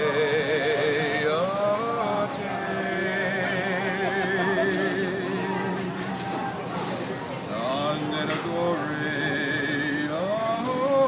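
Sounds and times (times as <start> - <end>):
man singing with vibrato: 0.0 - 5.8, 7.5 - 11.0.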